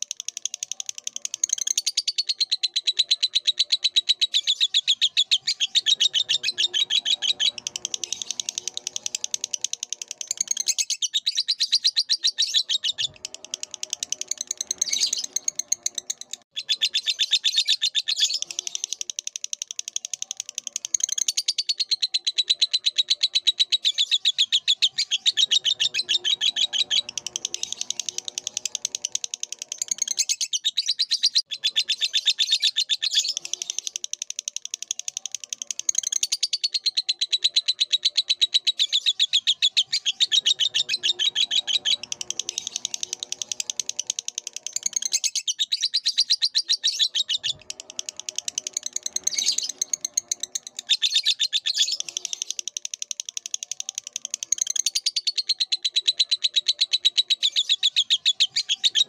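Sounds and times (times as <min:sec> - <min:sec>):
bird chattering trill: 0:00.0 - 0:59.0.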